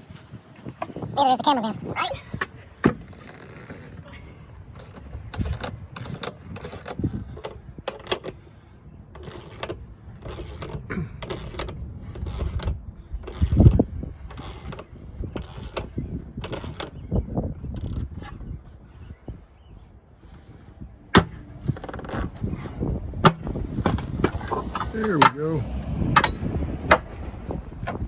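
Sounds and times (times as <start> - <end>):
dull thuds: 21.1 - 28.0.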